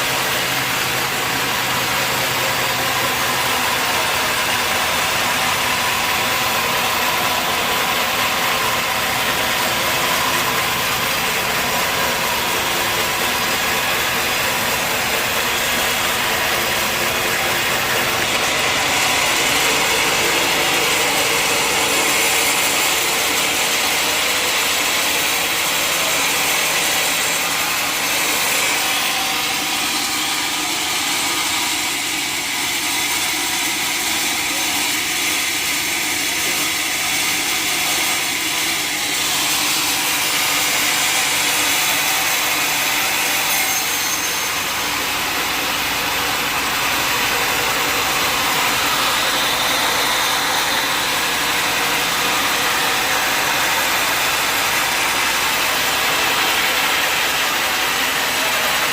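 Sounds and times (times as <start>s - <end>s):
sawmill machinery humming: 0.0s - 58.9s.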